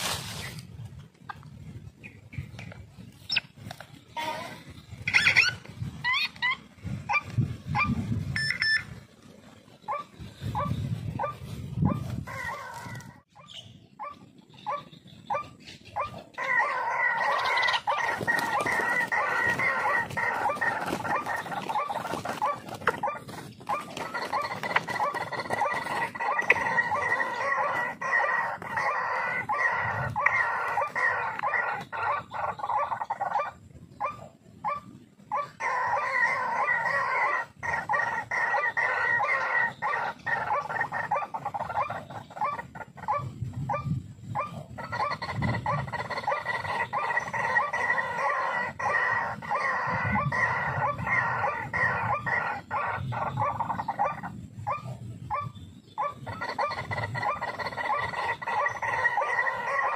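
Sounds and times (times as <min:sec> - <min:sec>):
bird croaking calls: 0:02.1 - 0:09.0, 0:09.8 - 0:59.9.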